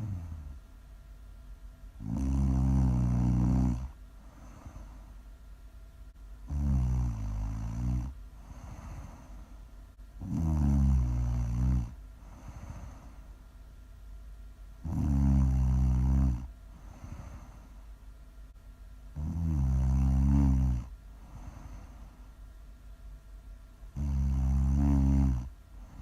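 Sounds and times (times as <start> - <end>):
loud snoring: 0.0 - 0.6, 2.0 - 4.9, 6.5 - 9.3, 10.2 - 13.1, 14.8 - 17.5, 19.2 - 21.8, 24.0 - 26.0
quiet breathing: 0.0 - 0.8, 2.0 - 5.5, 6.1 - 13.5, 14.8 - 22.6, 23.8 - 26.0.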